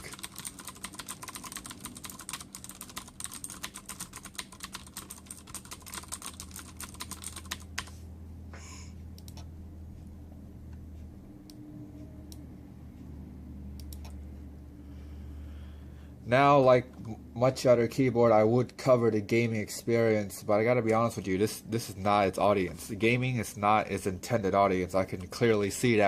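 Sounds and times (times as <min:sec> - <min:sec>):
mechanical keyboard typing: 0:00.0 - 0:07.9
faint low hum: 0:00.0 - 0:26.0.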